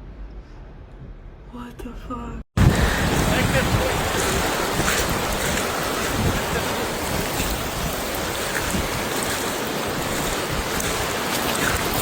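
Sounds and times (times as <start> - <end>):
driving rain: 2.6 - 12.0
storm wind roar: 2.6 - 12.0
wind gusts buffeting microphone: 2.6 - 12.0.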